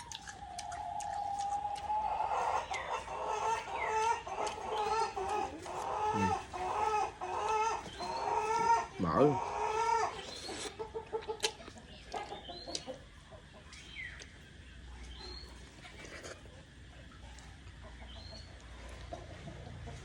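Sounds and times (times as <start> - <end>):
chewing clicks: 0.0 - 6.0, 10.2 - 13.0, 13.7 - 14.4
chickens clucking and chirping: 0.0 - 20.0.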